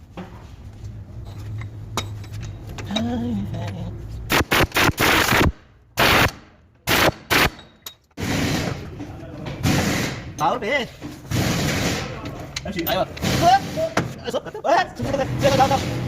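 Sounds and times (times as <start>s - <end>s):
pneumatic impact wrench rattling: 4.3s - 8.9s, 9.6s - 10.5s, 11.2s - 14.1s.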